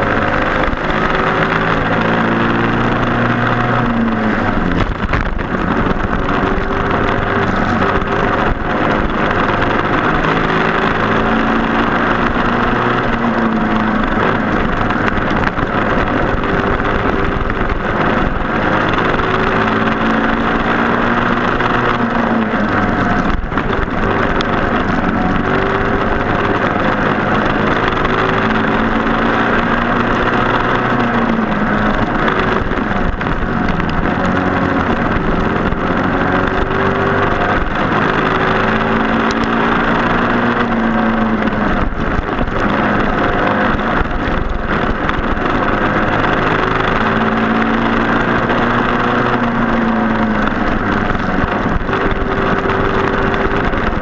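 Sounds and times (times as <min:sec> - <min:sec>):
kart engine revving: 0:00.0 - 0:54.0
steady rushing noise: 0:00.0 - 0:54.0.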